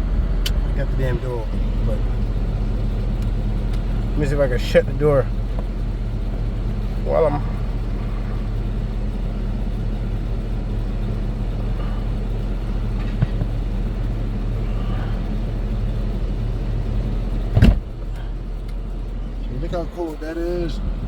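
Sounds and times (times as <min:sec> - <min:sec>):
car engine idling: 0:00.0 - 0:21.0
car door shutting: 0:13.0 - 0:13.6, 0:17.5 - 0:18.2.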